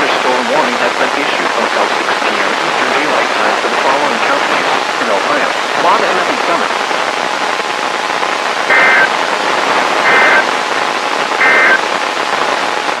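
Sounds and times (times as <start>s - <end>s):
radio static hiss: 0.0s - 13.0s
high-pitched data bursts: 8.7s - 9.1s, 10.0s - 10.5s, 11.4s - 11.8s.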